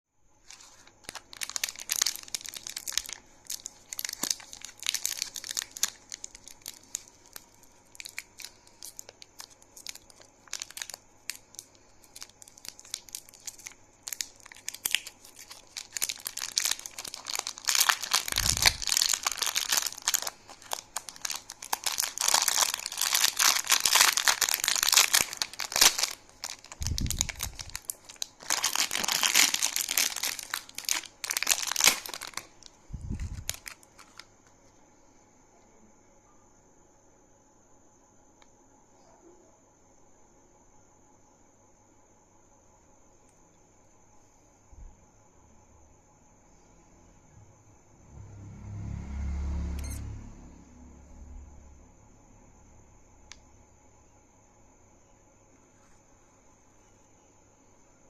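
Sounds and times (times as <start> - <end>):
candy wrappers crinkling and tearing: 0.4 - 34.3.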